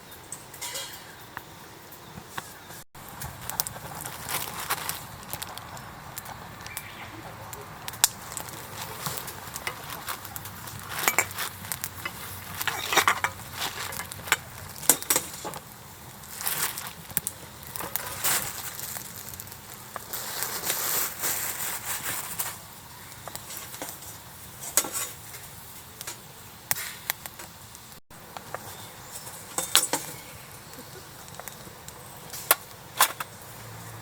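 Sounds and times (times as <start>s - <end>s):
cooking gear clinking: 7.9s - 22.6s, 29.1s - 33.3s.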